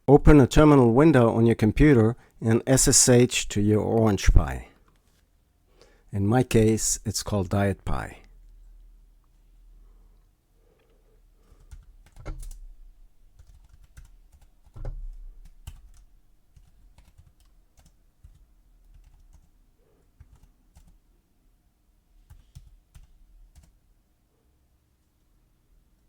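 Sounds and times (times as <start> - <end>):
computer keyboard typing: 11.4 - 12.7, 13.3 - 21.0, 22.3 - 23.8.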